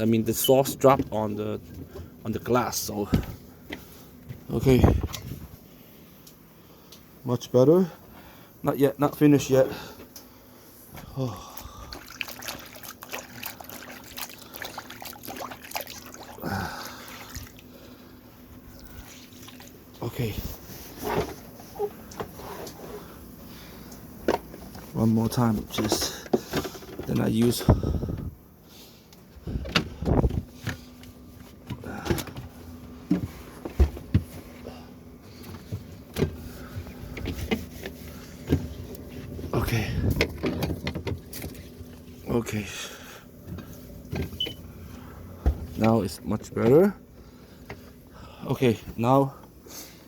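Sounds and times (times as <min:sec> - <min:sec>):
steady low hum: 0:00.0 - 0:50.0
water trickling and dripping: 0:11.9 - 0:16.4
wet cloth splashes: 0:11.9 - 0:17.6.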